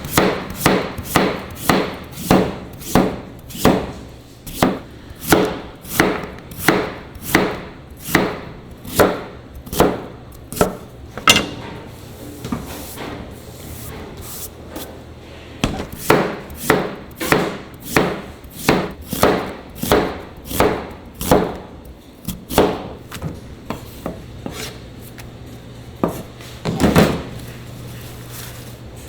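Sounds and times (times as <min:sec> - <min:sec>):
knife chopping on cutting board: 0:00.0 - 0:11.7, 0:15.6 - 0:24.7.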